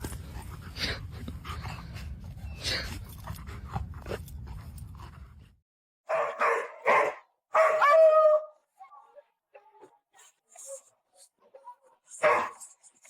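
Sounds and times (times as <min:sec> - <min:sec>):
dog barking: 0:06.1 - 0:08.5, 0:12.2 - 0:12.6.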